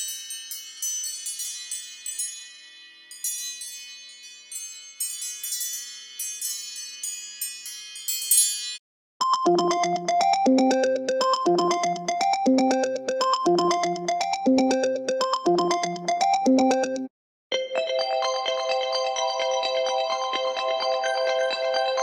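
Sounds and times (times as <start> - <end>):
tinkling chime ringtone: 0.0 - 22.0
synthesizer ringtone: 9.2 - 22.0.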